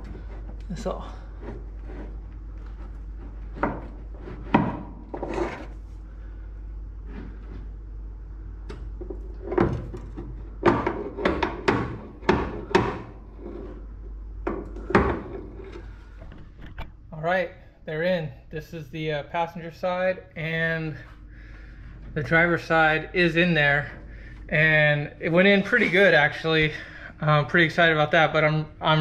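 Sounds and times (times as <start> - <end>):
steady low hum: 0.0 - 29.0
metal knocks and clunks: 8.8 - 13.2.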